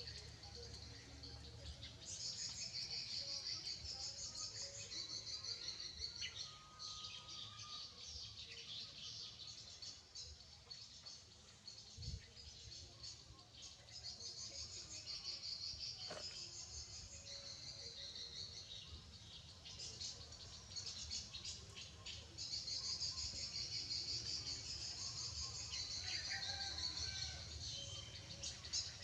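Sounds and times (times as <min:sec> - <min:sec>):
high-pitched insect chorus: 0:19.8 - 0:29.0.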